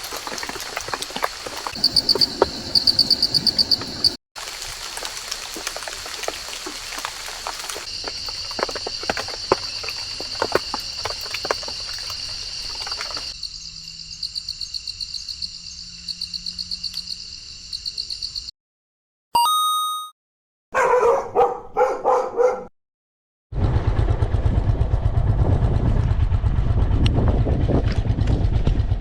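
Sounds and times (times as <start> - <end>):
rain pattering on leaves: 0.0 - 13.3
insects trilling: 0.0 - 18.5.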